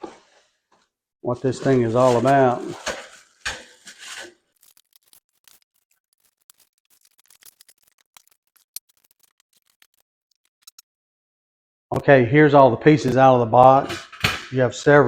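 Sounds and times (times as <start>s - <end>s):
packaging rustling: 1.9s - 10.8s
parts clicking and scraping: 2.9s - 10.8s.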